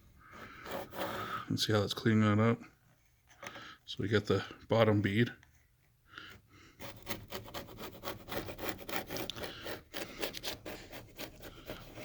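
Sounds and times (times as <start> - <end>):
putty knife scraping wood: 0.2 - 1.4, 6.8 - 12.0.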